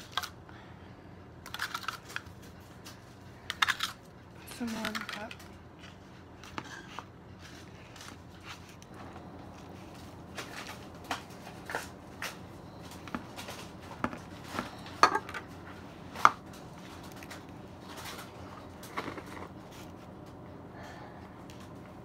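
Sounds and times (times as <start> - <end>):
utensil tapping against dishes: 15.0 - 15.4.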